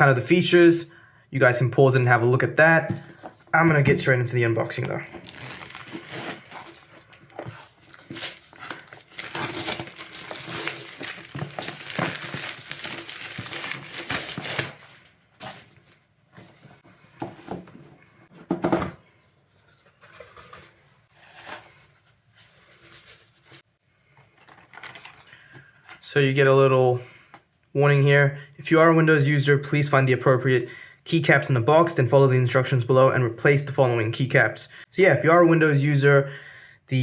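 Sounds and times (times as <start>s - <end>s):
plastic and cardboard crinkling: 2.9s - 16.8s, 19.8s - 26.0s.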